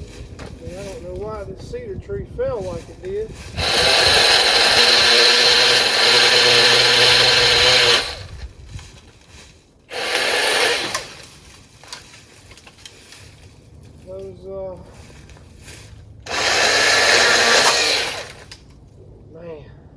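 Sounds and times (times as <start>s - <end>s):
pole saw motor whine: 3.6s - 8.4s, 9.9s - 11.2s, 16.3s - 18.5s.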